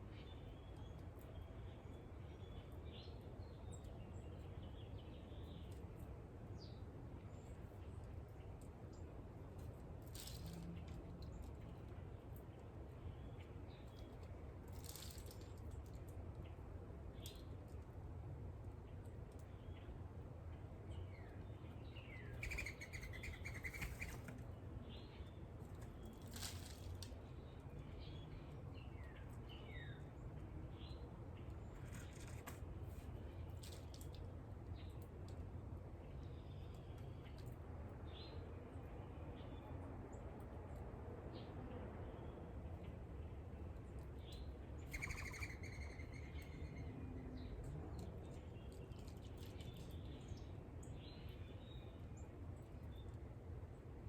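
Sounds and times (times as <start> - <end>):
low background hum: 0.0 - 54.0
small birds chirping: 20.9 - 32.4, 44.1 - 53.3
wing flutters: 22.4 - 24.4
bird trill: 44.9 - 46.9.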